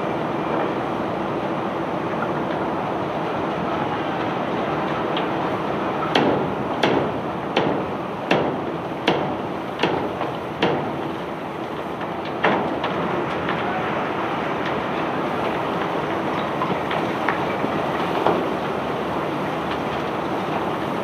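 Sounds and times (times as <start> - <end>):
unloading machinery running: 0.0 - 21.0.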